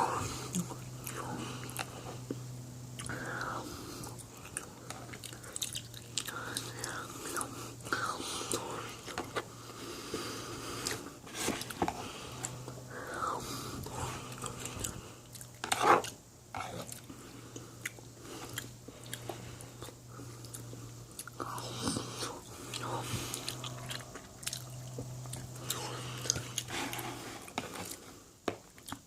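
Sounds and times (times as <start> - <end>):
person biting and chewing: 17.8 - 27.0.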